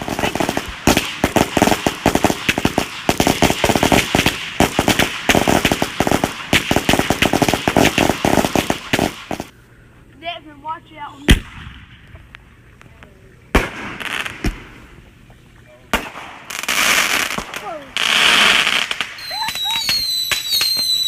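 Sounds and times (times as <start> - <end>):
firecrackers banging: 0.0 - 9.5, 13.5 - 21.0.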